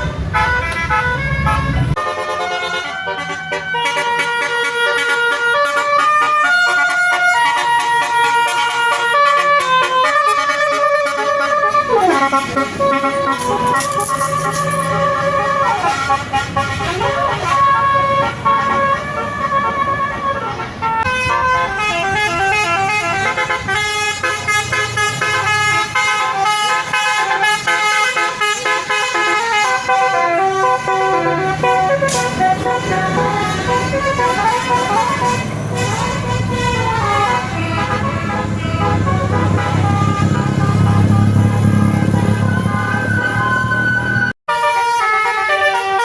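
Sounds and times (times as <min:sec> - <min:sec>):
musical bus horn melody: 0:00.0 - 0:46.0
low engine hum: 0:32.4 - 0:44.4.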